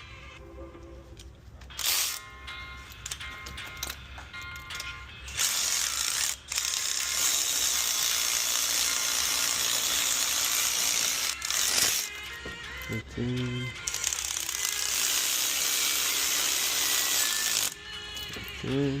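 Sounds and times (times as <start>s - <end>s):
ratchet running bolts in: 1.7s - 2.2s, 4.6s - 12.1s, 13.8s - 18.3s.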